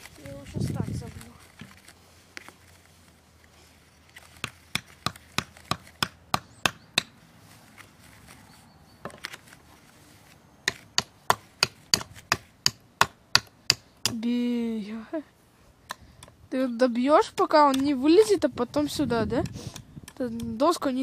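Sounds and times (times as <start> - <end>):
hammer driving a nail into wood: 10.7 - 14.2.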